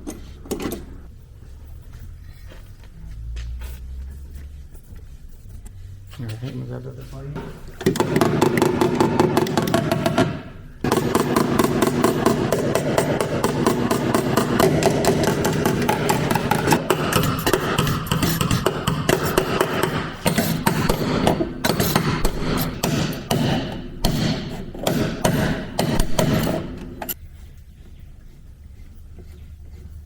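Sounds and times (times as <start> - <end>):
hammer striking sheet metal: 7.4 - 27.2.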